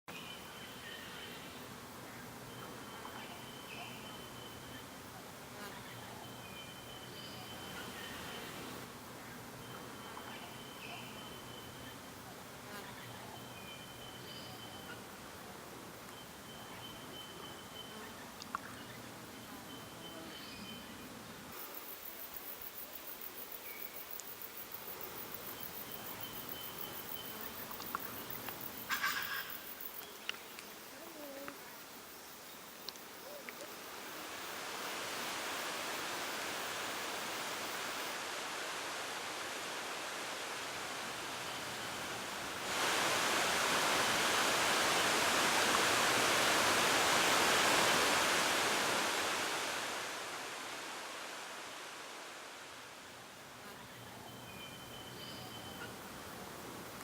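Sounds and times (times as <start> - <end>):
soft background hiss: 0.1 - 57.0
insect trilling: 21.7 - 38.1.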